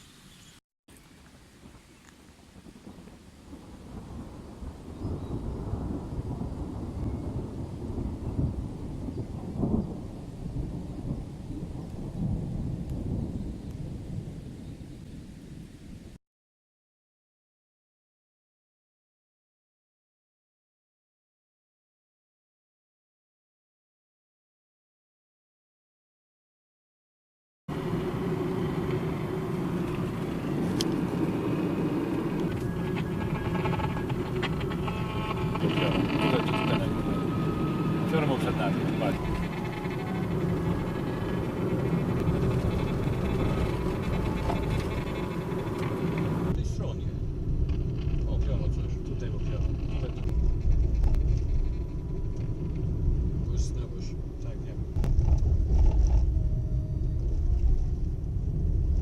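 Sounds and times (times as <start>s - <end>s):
rolling thunder: 2.6s - 16.2s, 27.7s - 59.0s
car road and engine noise: 27.7s - 59.0s.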